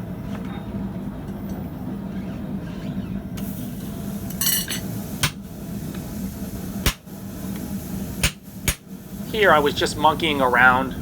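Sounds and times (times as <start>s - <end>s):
steady low hum: 0.0s - 11.0s
hammer blows on hot steel: 8.2s - 8.9s.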